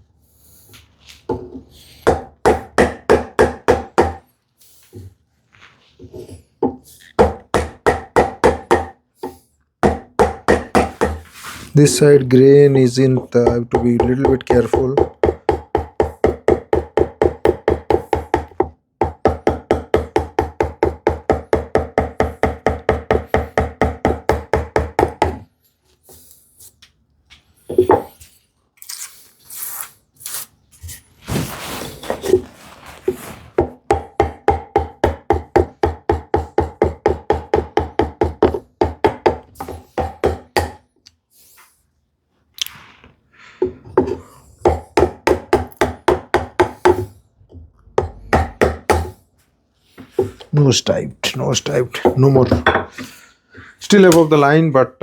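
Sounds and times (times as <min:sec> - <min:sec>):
scraping and rustling: 0:11.2 - 0:11.8, 0:27.4 - 0:33.7.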